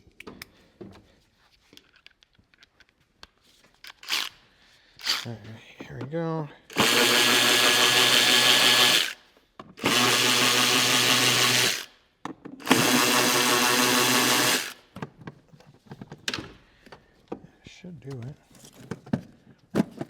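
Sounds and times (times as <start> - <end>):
power driver motor whine: 6.7 - 9.2, 9.8 - 11.9, 12.6 - 14.8.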